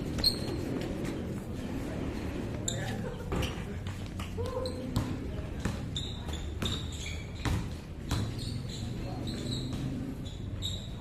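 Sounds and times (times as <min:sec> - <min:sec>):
chatter of voices: 0:00.9 - 0:07.1
basketball bouncing on court: 0:03.3 - 0:10.2.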